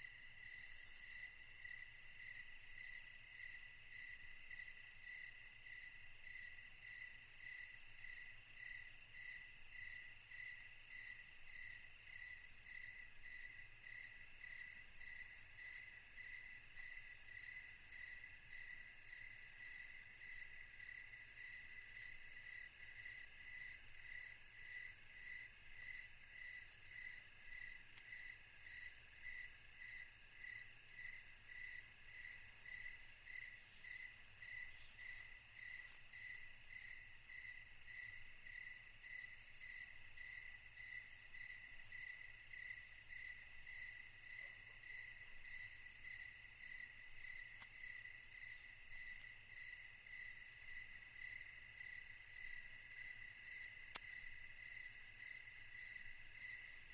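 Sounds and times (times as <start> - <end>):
insect pulsing chirp: 19.2 - 56.9.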